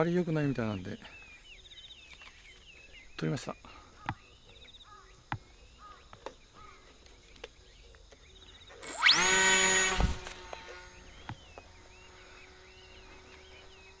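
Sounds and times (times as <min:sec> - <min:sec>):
faint bird or insect chirps: 0:00.0 - 0:14.0
model plane motor whine: 0:08.6 - 0:14.0.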